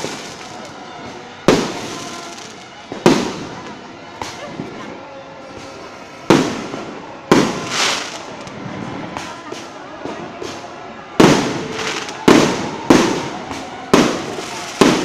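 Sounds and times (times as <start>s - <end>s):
loud firework bangs: 0.0s - 3.6s, 6.2s - 8.4s, 10.3s - 15.0s
firework pops and crackling: 0.0s - 4.8s, 5.4s - 15.0s.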